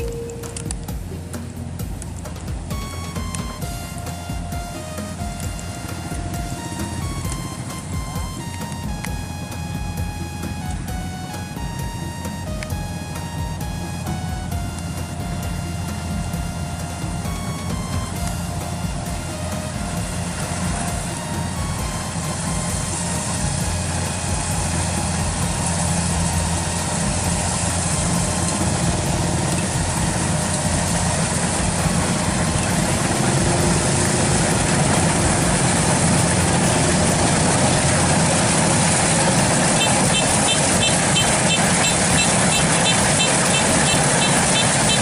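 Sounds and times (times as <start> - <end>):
heavy machine engine running: 0.0 - 45.0
rapid high-pitched ticking: 22.0 - 45.0.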